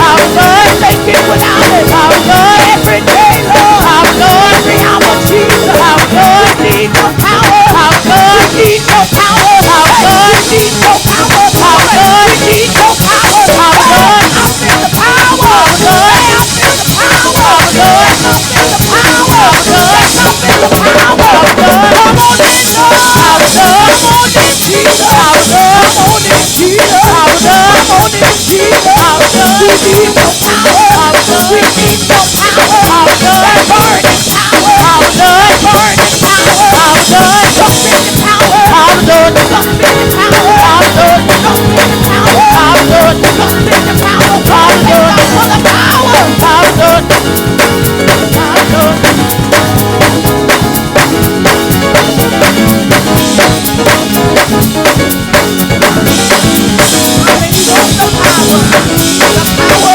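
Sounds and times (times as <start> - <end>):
drum kit snare and cymbals: 0.0 - 59.9
gospel band playing: 0.0 - 59.9.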